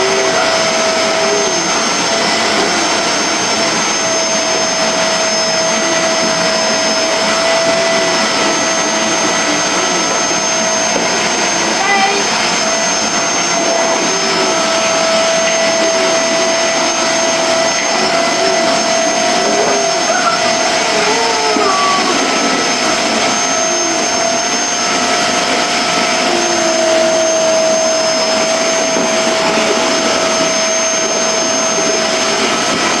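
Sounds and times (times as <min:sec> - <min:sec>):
vacuum cleaner running: 0:00.0 - 0:33.0
faint voices: 0:18.0 - 0:22.8.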